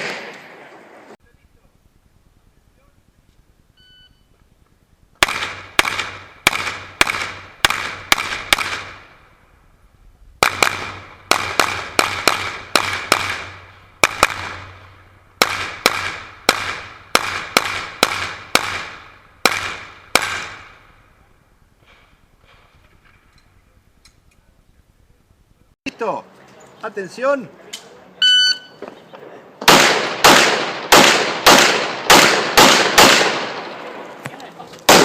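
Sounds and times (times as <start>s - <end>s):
rapid pistol shots with echo: 5.2s - 9.1s, 10.4s - 14.8s, 15.4s - 20.9s, 29.6s - 34.0s.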